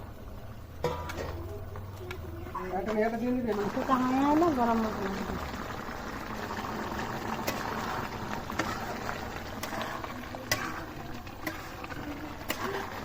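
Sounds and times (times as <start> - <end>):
curry bubbling in a pot: 0.0 - 13.0.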